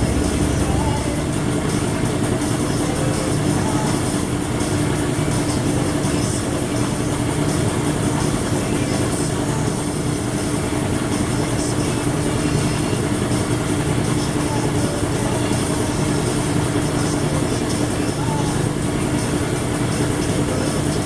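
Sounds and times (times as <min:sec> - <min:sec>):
machine droning: 0:00.0 - 0:21.0.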